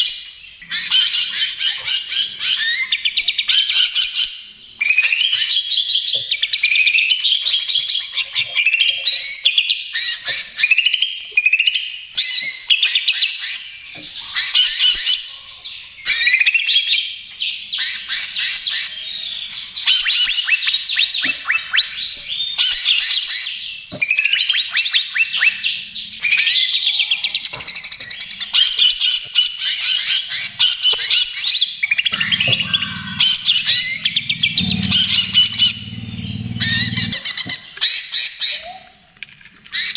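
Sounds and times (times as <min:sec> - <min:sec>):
bird singing chattering trills: 0:25.4 - 0:37.8
low hum: 0:32.1 - 0:37.5.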